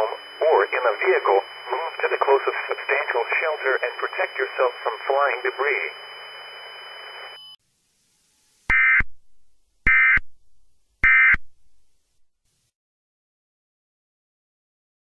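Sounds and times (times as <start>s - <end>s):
radio hiss: 0.0s - 7.4s.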